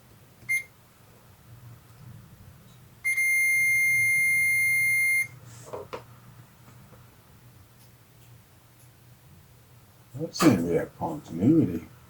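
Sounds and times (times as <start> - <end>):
continuity tester beeping: 0.4 - 0.7, 3.0 - 5.4.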